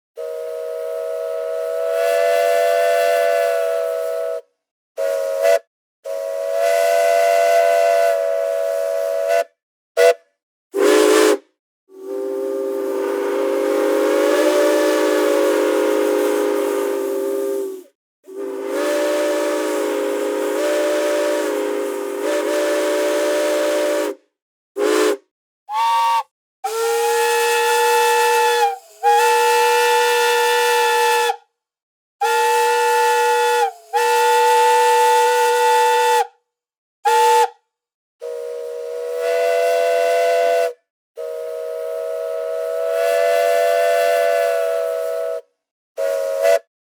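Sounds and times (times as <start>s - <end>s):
steam train whistle blasts: 0.1s - 31.5s, 32.2s - 36.4s, 37.0s - 37.6s, 38.2s - 46.7s
steam hissing: 11.9s - 24.2s, 26.7s - 30.8s, 32.3s - 35.8s.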